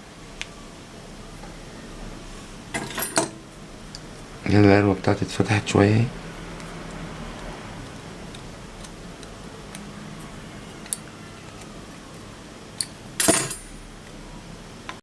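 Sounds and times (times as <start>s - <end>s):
small metal parts clinking: 12.8s - 13.8s.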